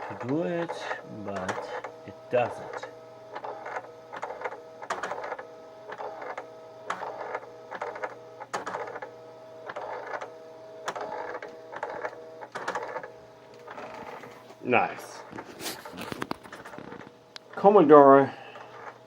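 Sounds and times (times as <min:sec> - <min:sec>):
printer sharp clicks: 0:00.0 - 0:14.5
printer carriage whirr: 0:00.0 - 0:19.0.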